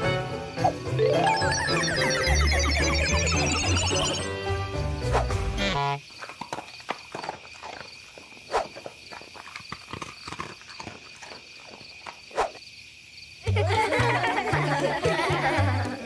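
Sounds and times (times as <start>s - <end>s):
background music: 0.0s - 5.9s.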